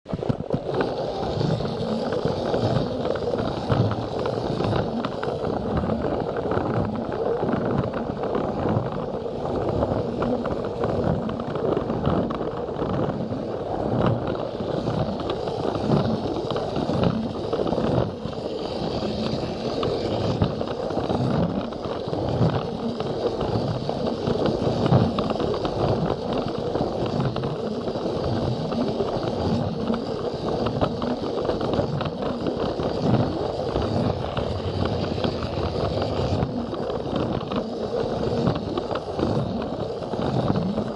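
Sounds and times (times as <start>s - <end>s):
toy train motor whir: 0.4s - 40.9s.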